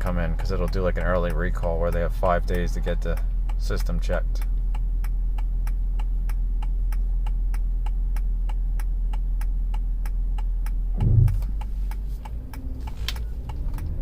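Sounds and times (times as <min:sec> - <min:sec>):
car cabin drone: 0:00.0 - 0:14.0
rapid even ticking: 0:00.0 - 0:14.0
low thump: 0:10.9 - 0:11.6.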